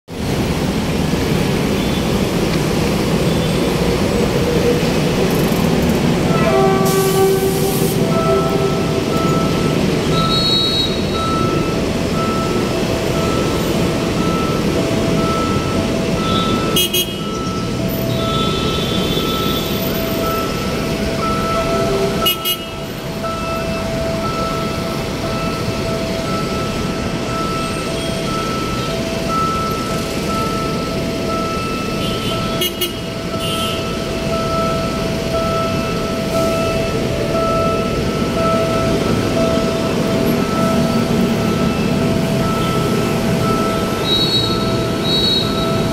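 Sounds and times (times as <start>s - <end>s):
road traffic noise: 0.1s - 45.9s
reversing alarm beeping: 3.1s - 45.9s
vehicle horn: 6.3s - 9.2s, 10.1s - 11.2s, 16.2s - 17.4s, 18.2s - 19.7s, 21.5s - 22.8s, 32.0s - 33.9s, 44.0s - 45.8s.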